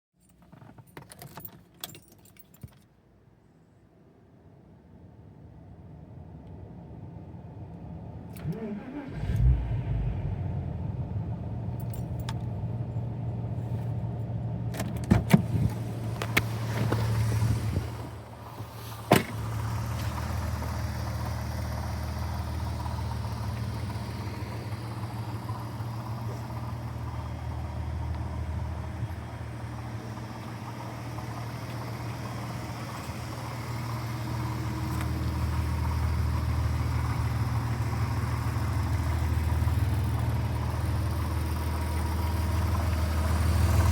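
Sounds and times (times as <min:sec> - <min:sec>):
car engine idling with metallic rattle: 0:11.4 - 0:43.9.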